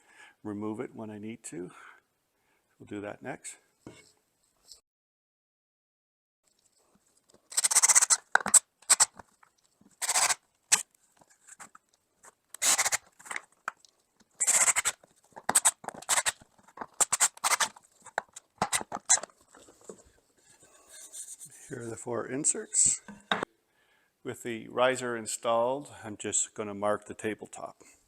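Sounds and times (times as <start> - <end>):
threaded inserts scraping into wood: 7.4 - 11.8, 12.6 - 20.0.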